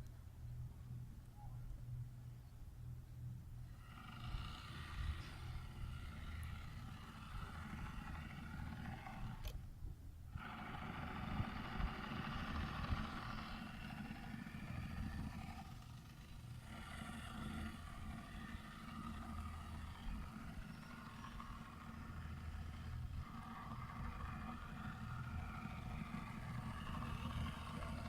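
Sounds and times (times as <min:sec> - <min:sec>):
model boat motor whining: 0:03.5 - 0:28.0
click: 0:09.4 - 0:09.6.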